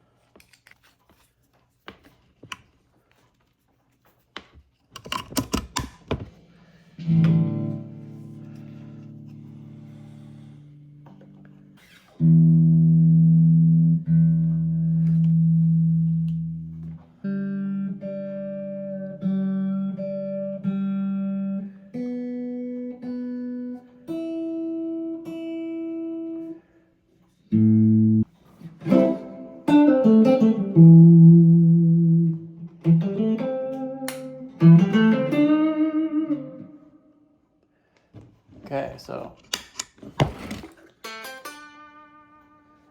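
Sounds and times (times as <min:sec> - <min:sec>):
overdriven electric guitar: 0:06.9 - 0:26.6, 0:27.5 - 0:37.2.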